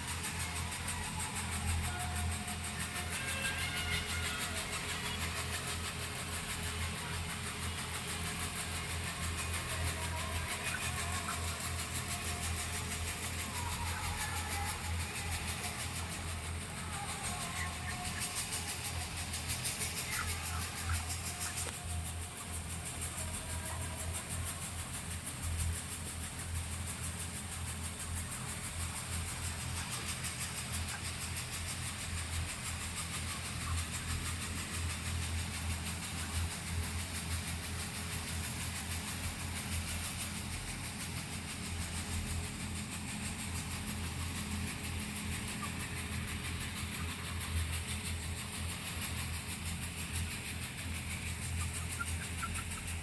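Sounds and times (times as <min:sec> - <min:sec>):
low mechanical hum: 0:00.0 - 0:53.0.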